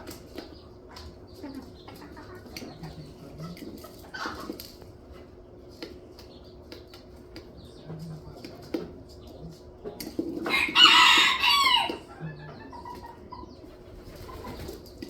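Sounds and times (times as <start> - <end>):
chicken clucking: 0.0 - 15.0.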